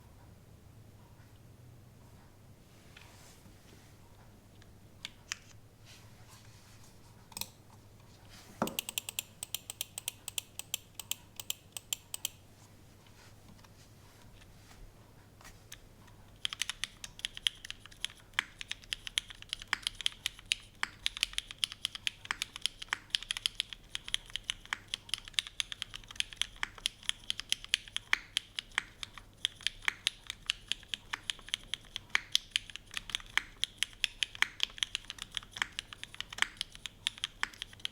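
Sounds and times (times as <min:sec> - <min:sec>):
typing on mechanical keyboard: 0:08.7 - 0:12.4, 0:16.4 - 0:37.9.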